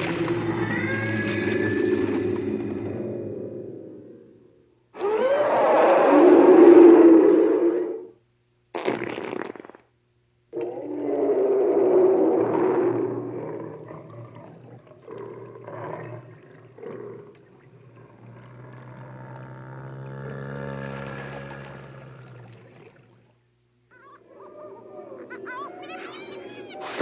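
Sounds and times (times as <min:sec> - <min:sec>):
low pitched drone: 0:00.0 - 0:04.7
creature growling: 0:17.9 - 0:22.6.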